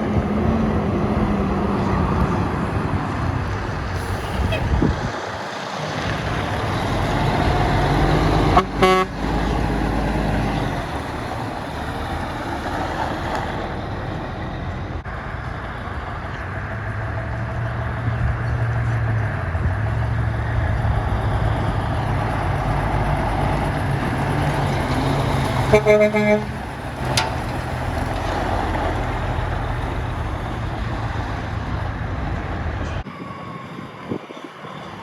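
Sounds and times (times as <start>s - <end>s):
heavy trucks driving past: 0.0s - 35.0s
vehicle horn toot: 8.5s - 9.2s, 25.7s - 26.6s.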